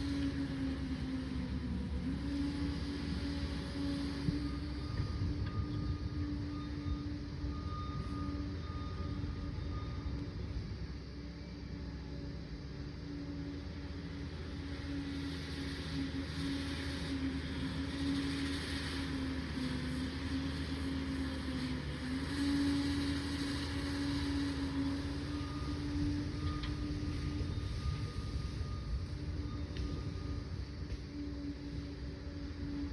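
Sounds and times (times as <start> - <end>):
diesel engine running: 0.0 - 32.9.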